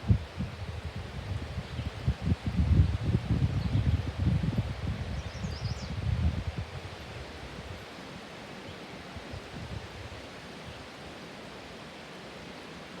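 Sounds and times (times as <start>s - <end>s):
wind gusts hitting microphone: 0.0s - 7.8s, 9.2s - 10.7s
wind rushing through leaves: 0.0s - 13.0s.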